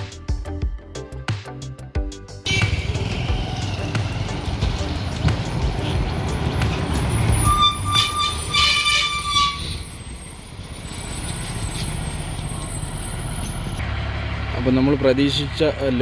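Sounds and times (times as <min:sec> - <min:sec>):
truck engine rumbling: 0:02.4 - 0:16.0
truck horn toots: 0:02.5 - 0:03.7, 0:06.9 - 0:10.2.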